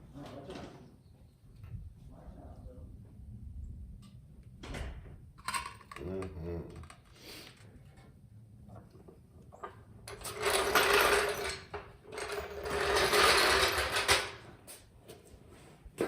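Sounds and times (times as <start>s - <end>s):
power tool buzzing and rattling: 10.1s - 14.4s.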